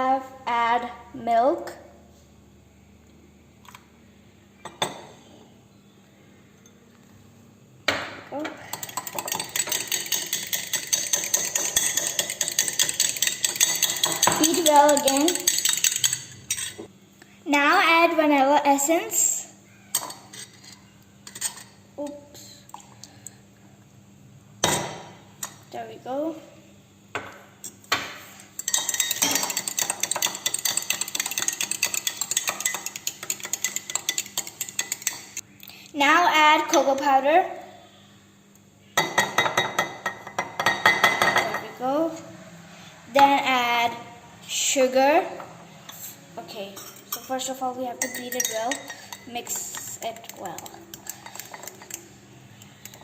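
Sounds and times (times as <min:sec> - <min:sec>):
utensil clinking against dish: 0:08.4 - 0:16.9, 0:28.6 - 0:35.4, 0:46.8 - 0:53.0
utensil clattering: 0:08.7 - 0:16.8, 0:28.6 - 0:35.4, 0:48.0 - 0:52.1.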